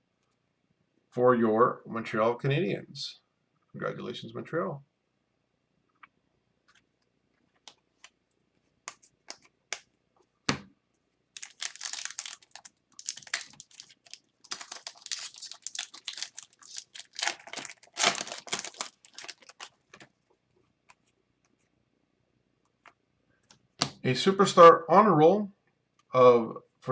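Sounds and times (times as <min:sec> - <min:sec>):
cards clicking and tapping: 0:08.9 - 0:09.9, 0:23.5 - 0:24.0
foil wrapper crinkling and tearing: 0:11.4 - 0:20.1.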